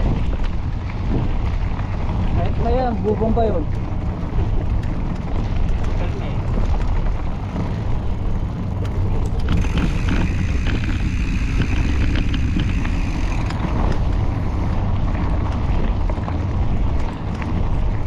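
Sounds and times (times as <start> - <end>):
bike rolling over rough trail: 0.0 - 18.0
wind rumble on microphone: 0.0 - 18.0
bike rattling clicks: 3.7 - 18.0.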